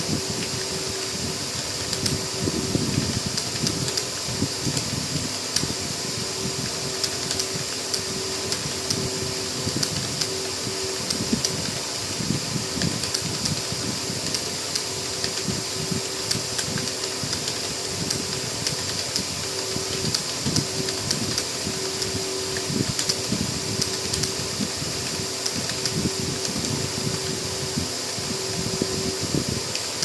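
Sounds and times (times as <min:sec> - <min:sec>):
fan hum: 0:00.0 - 0:30.0
keyboard typing: 0:06.5 - 0:11.8, 0:16.2 - 0:27.3.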